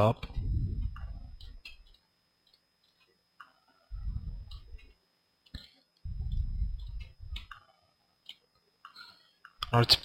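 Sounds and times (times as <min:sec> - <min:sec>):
low muffled rumble: 0:00.2 - 0:01.5, 0:03.9 - 0:04.8, 0:06.1 - 0:07.5
computer mouse clicking: 0:04.4 - 0:09.7.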